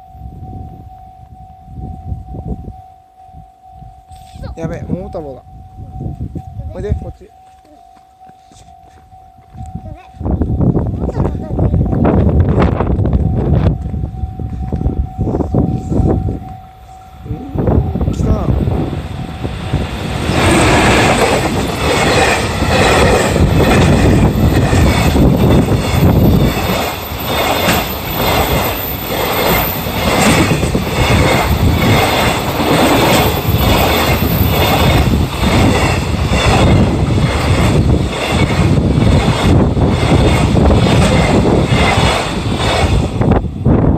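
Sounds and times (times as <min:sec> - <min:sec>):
freight train passing: 0:00.0 - 0:43.9
wheels clacking over rail joints: 0:19.8 - 0:43.2.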